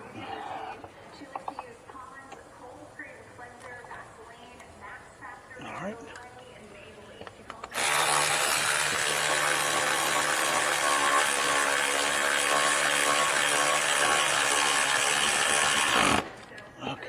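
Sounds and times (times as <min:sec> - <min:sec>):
electric ratchet driving a bolt: 0:07.5 - 0:16.5.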